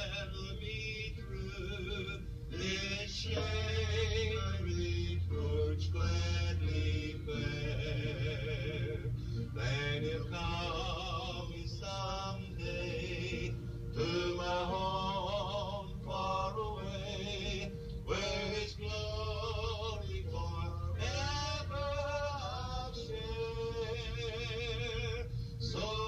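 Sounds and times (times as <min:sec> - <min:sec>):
person singing with vibrato: 0:00.0 - 0:26.0.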